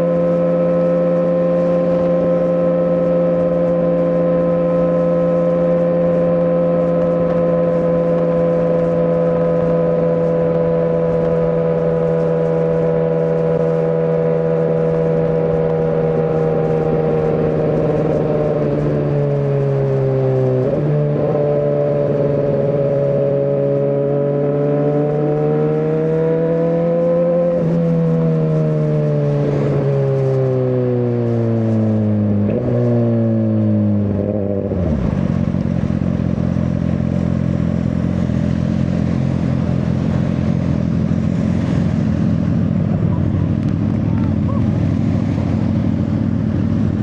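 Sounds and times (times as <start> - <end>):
motorcycle engine with gear changes: 0.0 - 47.0.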